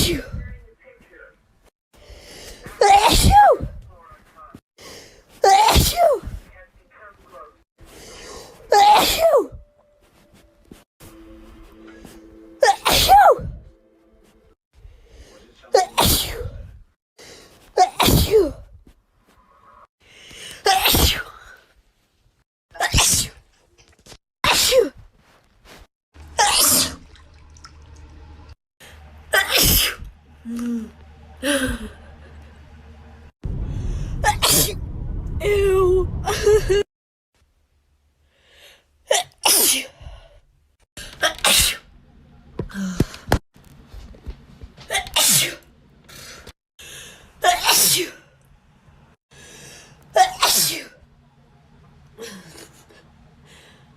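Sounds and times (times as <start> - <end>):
person sneezing: 8.7 - 9.6, 12.6 - 13.5, 15.8 - 16.7, 17.8 - 18.6, 20.7 - 21.4, 24.4 - 25.0, 26.4 - 27.0, 29.4 - 30.1, 47.4 - 48.2, 50.2 - 51.0.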